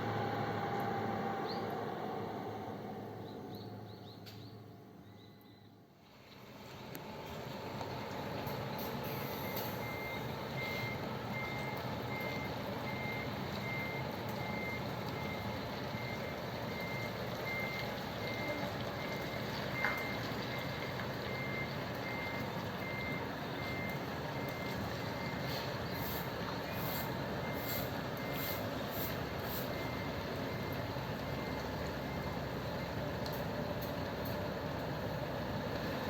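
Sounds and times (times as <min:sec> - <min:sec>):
bus diesel engine running: 0:00.0 - 0:04.9, 0:06.4 - 0:36.0
reversing alarm beeping: 0:09.2 - 0:26.1, 0:26.7 - 0:33.0.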